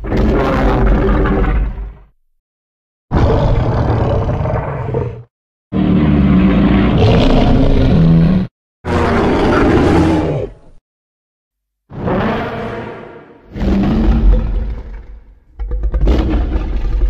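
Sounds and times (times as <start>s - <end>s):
giant monster roars: 3.1s - 10.7s, 11.9s - 17.0s.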